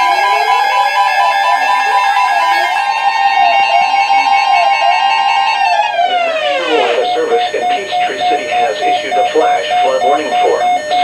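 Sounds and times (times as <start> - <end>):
two-tone alert alarm: 0.0 - 11.0.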